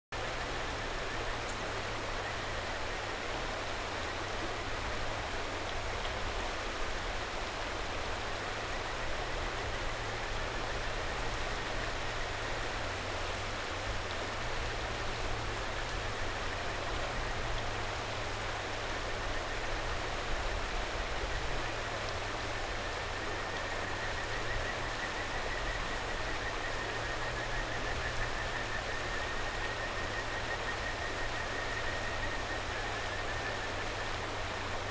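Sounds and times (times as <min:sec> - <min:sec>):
mountain stream rushing: 0:00.2 - 0:34.9
frogs trilling: 0:19.1 - 0:34.9.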